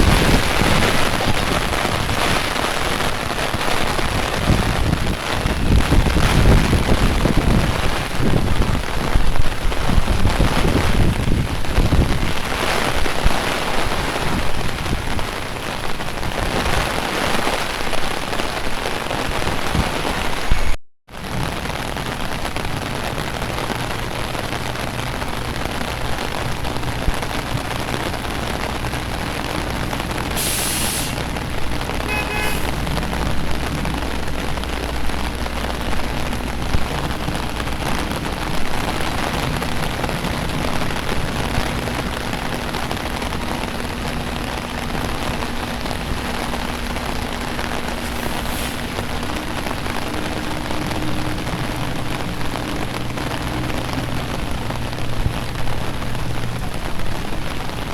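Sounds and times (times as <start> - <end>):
rain falling on street: 0.0 - 57.9
vehicle engines humming: 21.2 - 57.9
burst of hiss: 30.3 - 31.3, 48.0 - 49.0.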